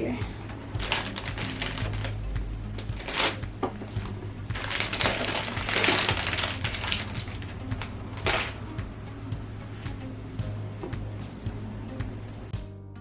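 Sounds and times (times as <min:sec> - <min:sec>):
faint background music: 0:00.0 - 0:13.0
packaging crinkling: 0:00.8 - 0:02.1, 0:04.5 - 0:07.4.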